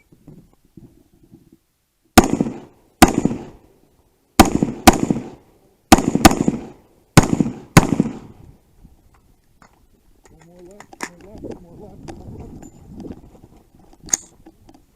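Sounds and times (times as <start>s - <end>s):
gunshots with echo: 2.2s - 3.6s, 4.4s - 8.3s.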